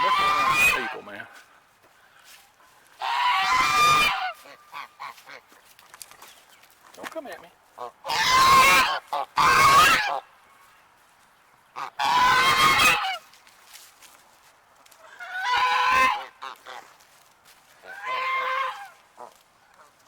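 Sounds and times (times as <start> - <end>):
goose honking harshly: 0.0 - 1.2, 3.0 - 5.4, 7.8 - 10.3, 11.8 - 13.2, 15.1 - 16.9, 17.8 - 19.3.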